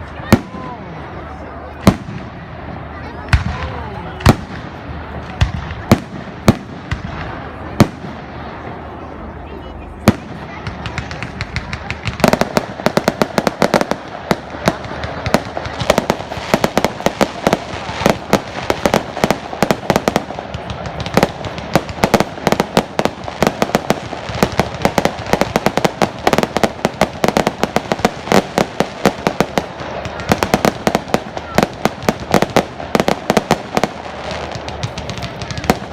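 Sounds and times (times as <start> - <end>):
fireworks cracks and bangs: 0.0 - 9.2, 9.9 - 35.9
rumble of fireworks launches: 1.8 - 8.9, 10.0 - 35.9.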